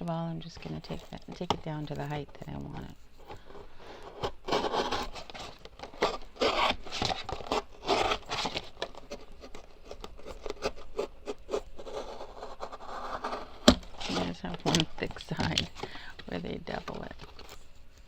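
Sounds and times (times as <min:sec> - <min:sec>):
cardboard being cut: 0:04.0 - 0:15.7.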